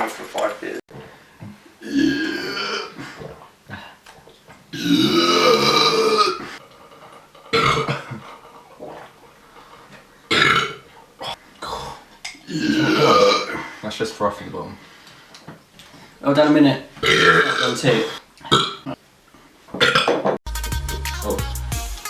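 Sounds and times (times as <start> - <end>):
men burping: 1.4 - 3.9, 4.7 - 13.7, 17.0 - 19.0.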